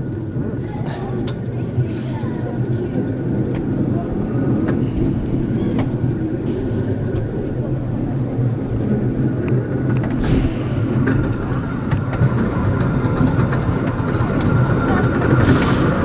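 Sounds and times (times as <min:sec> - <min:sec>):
roller coaster wheels rumbling: 0:00.0 - 0:16.0
track clicks and knocks: 0:08.6 - 0:16.0.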